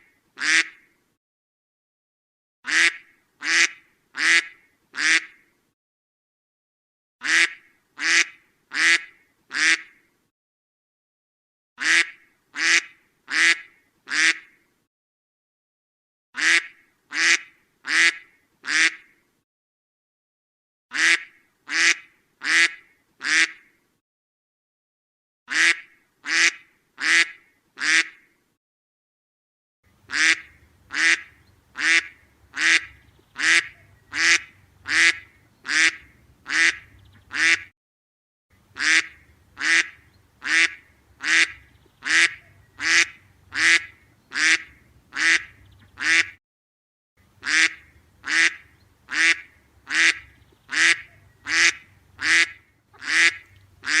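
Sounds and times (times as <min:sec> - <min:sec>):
duck quacking: 0:00.0 - 0:00.8, 0:02.7 - 0:05.4, 0:07.2 - 0:10.0, 0:11.8 - 0:14.6, 0:16.4 - 0:19.1, 0:20.9 - 0:23.7, 0:25.5 - 0:28.2, 0:30.1 - 0:37.7, 0:38.7 - 0:46.4, 0:47.4 - 0:54.0.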